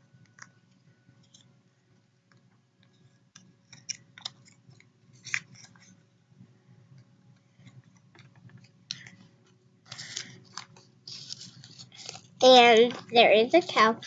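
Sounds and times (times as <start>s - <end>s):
small book rustling and clicking: 2.2s - 6.0s, 7.0s - 13.2s.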